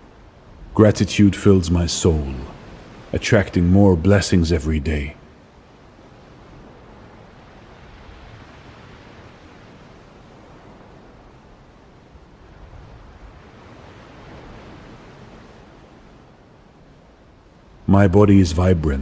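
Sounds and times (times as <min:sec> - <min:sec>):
ocean surf rushing: 0:00.6 - 0:05.5, 0:17.8 - 0:19.0.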